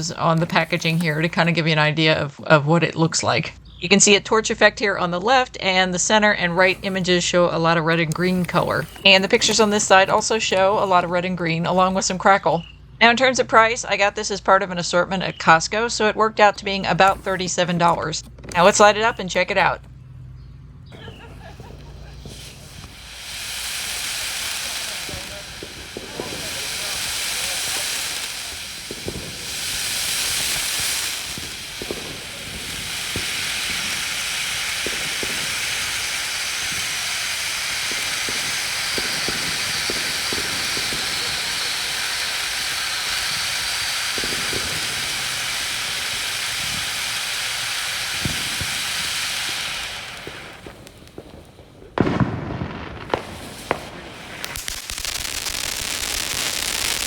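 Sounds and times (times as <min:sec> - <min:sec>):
loud firework pops: 0:00.0 - 0:01.6, 0:06.4 - 0:12.1, 0:20.9 - 0:57.0
firework fountain hissing: 0:00.0 - 0:02.2, 0:05.3 - 0:13.8, 0:15.3 - 0:19.9, 0:20.9 - 0:57.0.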